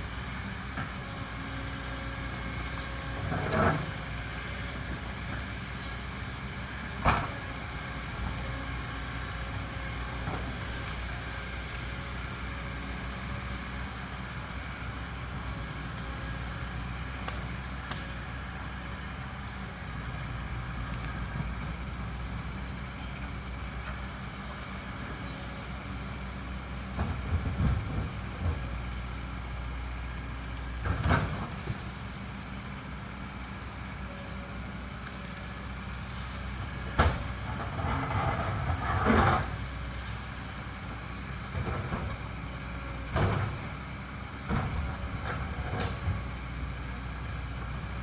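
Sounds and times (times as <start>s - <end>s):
excavator diesel engine running: 0.0s - 48.0s.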